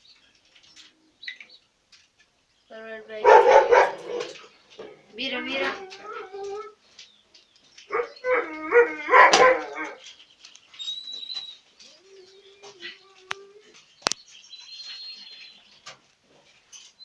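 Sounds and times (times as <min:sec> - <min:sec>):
cage birds whistling: 0:06.9 - 0:15.9.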